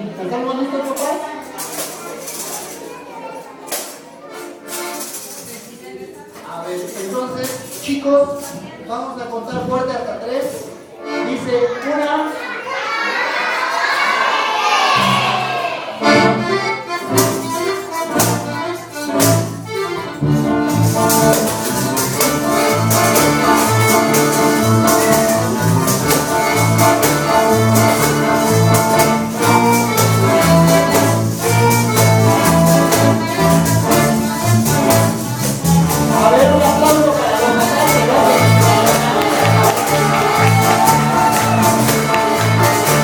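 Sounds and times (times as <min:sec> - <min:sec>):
accordion-led band playing dance tune: 0:00.0 - 0:43.0
loud percussion hits: 0:34.8 - 0:43.0.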